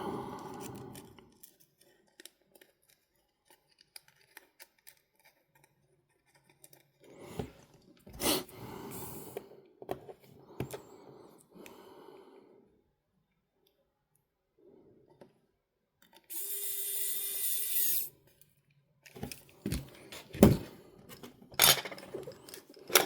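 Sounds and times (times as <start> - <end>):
small clicks of handling device: 16.0 - 16.6.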